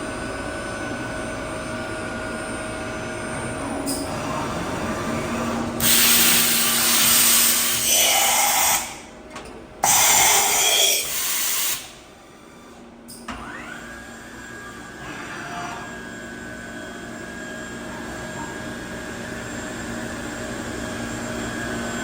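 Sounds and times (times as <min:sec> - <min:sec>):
machine hissing bursts: 0:05.8 - 0:09.1, 0:09.8 - 0:12.0.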